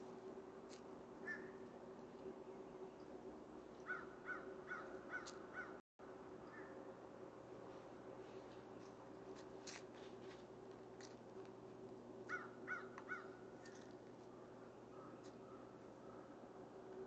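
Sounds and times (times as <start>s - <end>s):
bird calling: 1.2s - 1.6s, 3.8s - 5.8s, 12.3s - 13.9s.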